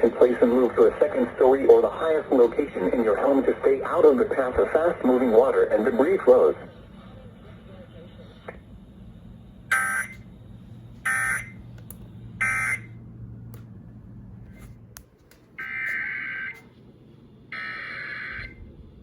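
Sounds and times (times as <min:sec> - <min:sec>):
digital data tone bursts: 0:12.4 - 0:12.9.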